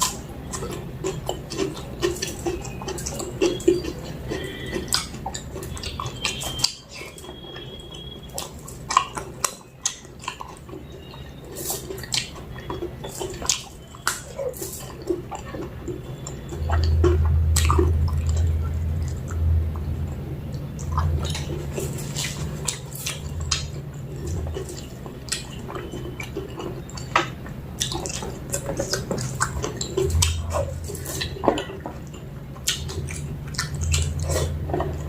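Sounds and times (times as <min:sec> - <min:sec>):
wet chewing and lip smacks: 0:00.0 - 0:35.0
steady low hum: 0:10.0 - 0:35.0.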